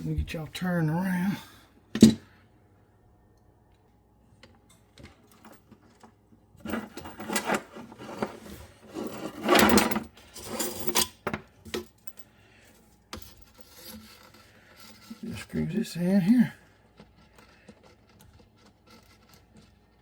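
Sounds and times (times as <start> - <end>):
objects rattling and scraping: 4.9 - 15.7.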